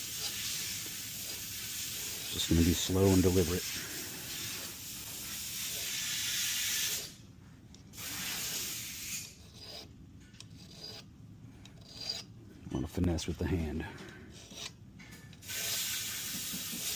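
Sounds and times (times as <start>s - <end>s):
hand file on steel: 0.0s - 4.8s, 8.0s - 9.9s, 10.6s - 11.1s, 11.7s - 12.3s, 14.3s - 14.8s.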